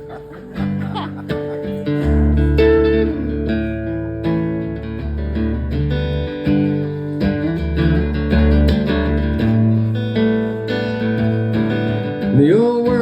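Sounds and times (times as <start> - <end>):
deep bass notes: 0.0 - 10.3
strummed guitar: 0.0 - 13.0.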